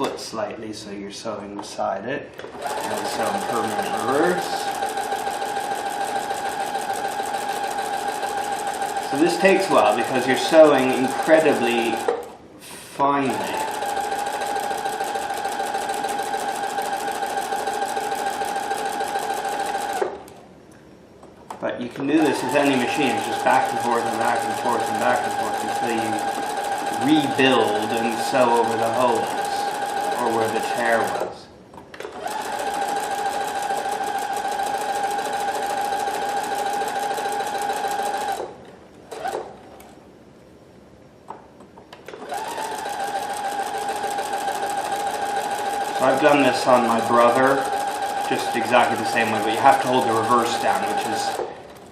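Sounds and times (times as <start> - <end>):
sewing machine motor whine: 2.4 - 12.3, 13.2 - 20.2, 22.0 - 31.3, 32.0 - 38.5, 42.0 - 51.8
sewing machine click: 24.4 - 28.2
sewing needle ticking: 25.6 - 27.0, 29.4 - 30.2, 42.2 - 46.0, 47.6 - 48.3.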